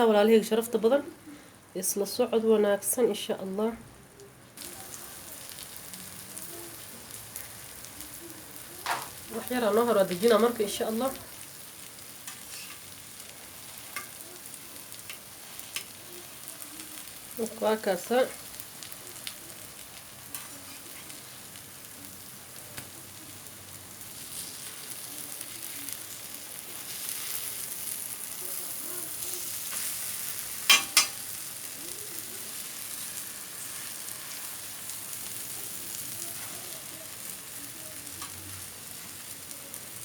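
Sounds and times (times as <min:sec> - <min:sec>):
food sizzling in hot oil: 0:04.6 - 0:40.0.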